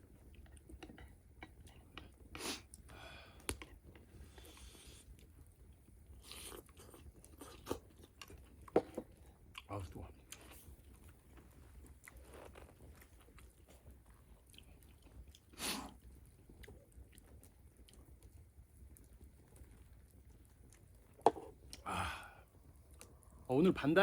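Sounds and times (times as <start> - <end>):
person chewing food: 0.1 - 21.9.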